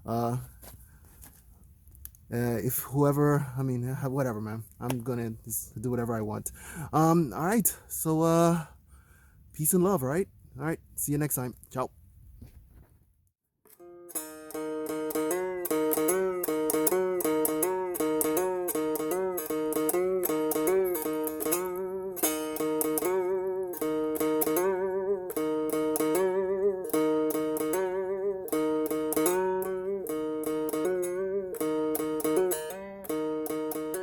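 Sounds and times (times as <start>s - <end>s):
plucked string instrument music: 13.6s - 34.0s.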